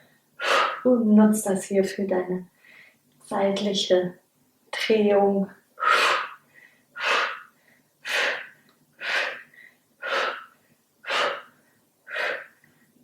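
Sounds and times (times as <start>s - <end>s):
woman exhaling forcefully: 0.4s - 0.9s, 5.8s - 6.4s, 7.0s - 12.6s.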